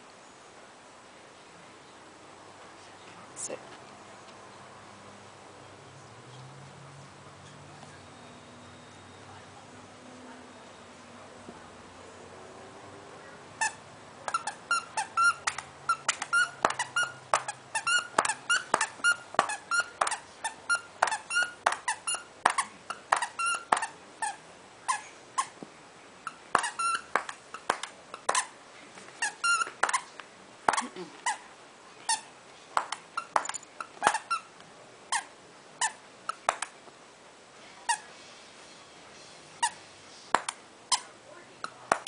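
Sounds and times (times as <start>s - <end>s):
squeaky dog toy squeaking: 13.6s - 25.6s, 26.2s - 28.5s, 29.2s - 30.1s, 30.7s - 31.4s, 32.1s - 32.3s, 33.1s - 34.5s, 35.1s - 36.5s, 40.9s - 41.1s.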